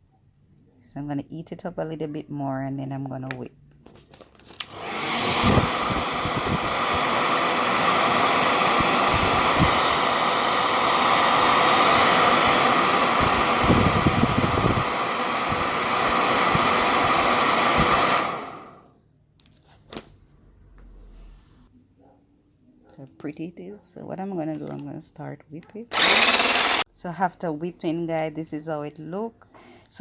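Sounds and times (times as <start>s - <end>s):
blow dryer running: 4.6s - 18.9s, 25.9s - 26.8s.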